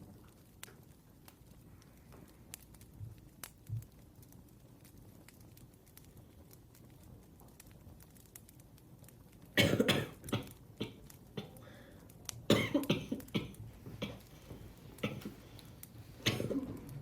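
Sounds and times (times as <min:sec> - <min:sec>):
person coughing: 0:09.6 - 0:11.6, 0:12.5 - 0:14.2, 0:15.0 - 0:15.3, 0:16.2 - 0:16.8.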